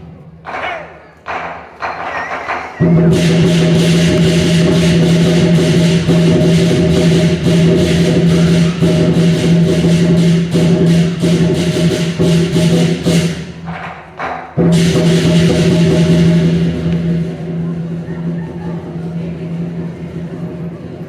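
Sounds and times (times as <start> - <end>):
fast percussion strokes: 0.4 - 21.0
loud music with low tones: 2.8 - 13.5.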